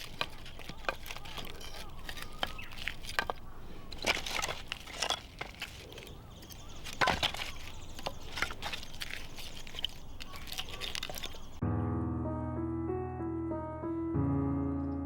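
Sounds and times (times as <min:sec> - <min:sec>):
dry wood cracking: 0:00.0 - 0:11.6.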